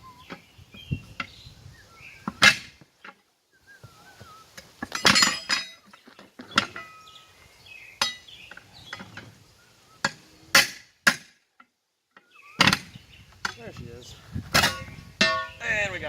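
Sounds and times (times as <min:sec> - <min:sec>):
steel tools clanking on metal: 0:04.8 - 0:07.2, 0:08.0 - 0:09.3, 0:14.6 - 0:15.6.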